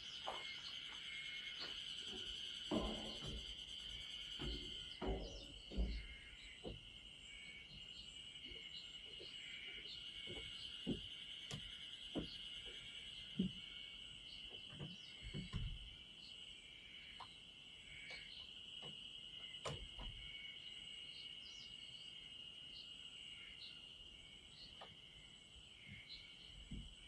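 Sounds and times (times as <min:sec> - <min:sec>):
insects trilling: 0:00.0 - 0:27.0
low thumps: 0:02.7 - 0:07.1.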